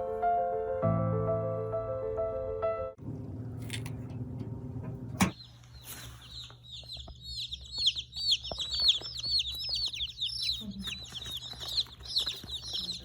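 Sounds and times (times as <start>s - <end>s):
piano music: 0.0s - 5.2s
baby chicks peeping: 5.3s - 13.0s.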